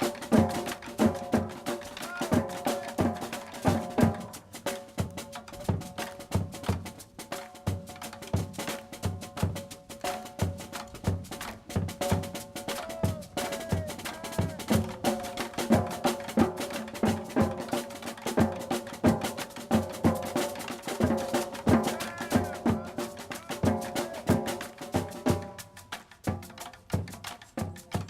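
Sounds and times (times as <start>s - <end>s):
percussive drum music: 0.0s - 28.0s.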